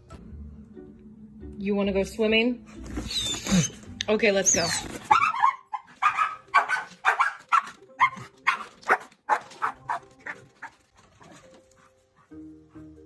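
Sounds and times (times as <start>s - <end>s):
dog barking: 5.1s - 10.8s.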